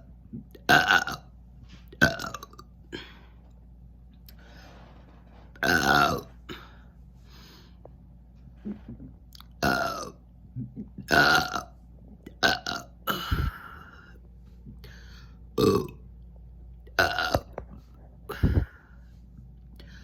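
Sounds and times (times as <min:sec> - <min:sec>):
woman burping: 0:00.4 - 0:01.3, 0:05.6 - 0:06.7, 0:09.6 - 0:11.7, 0:12.3 - 0:14.0, 0:15.6 - 0:16.0, 0:17.0 - 0:17.6.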